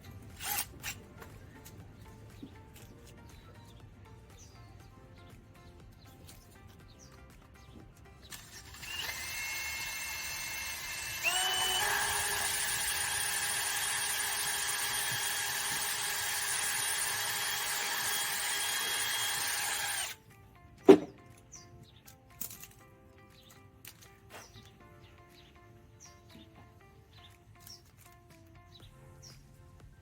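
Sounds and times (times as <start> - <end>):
power tool whining: 0.4 - 0.7, 8.3 - 20.2.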